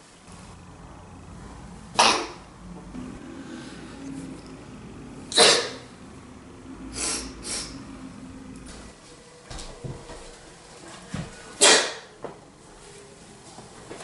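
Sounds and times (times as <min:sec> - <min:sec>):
girl sneezing: 0:05.3 - 0:05.8, 0:11.6 - 0:12.0.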